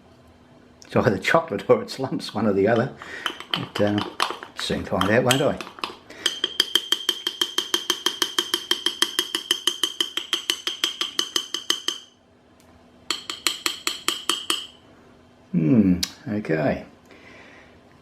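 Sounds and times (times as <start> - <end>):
teaspoon clinking against mug: 2.7 - 12.1.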